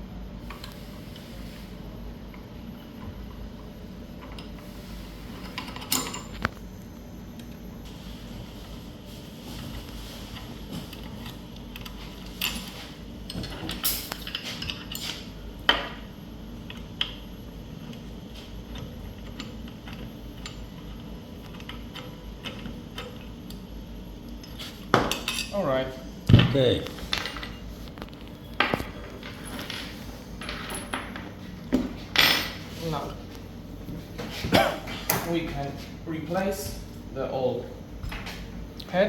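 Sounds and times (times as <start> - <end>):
metal tools clinking: 28.6 - 31.4.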